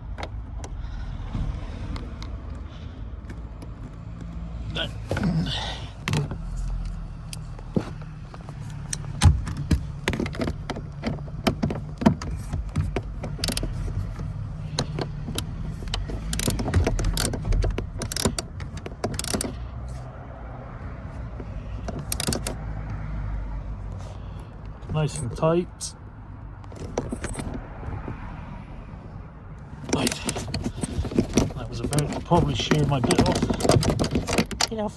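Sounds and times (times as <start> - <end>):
socket ratchet clicking: 6.0 - 19.6, 21.8 - 22.6, 29.8 - 34.7.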